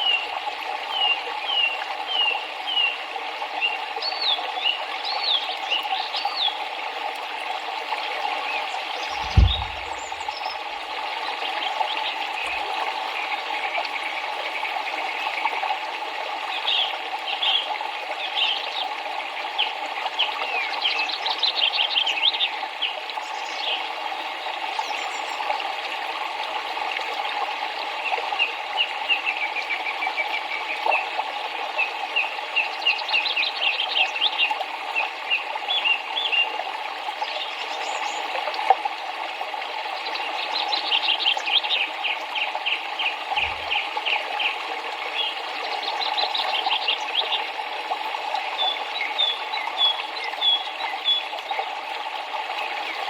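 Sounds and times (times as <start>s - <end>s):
river water flowing: 0.1s - 15.2s, 29.1s - 53.0s
small birds chirping: 9.0s - 10.6s.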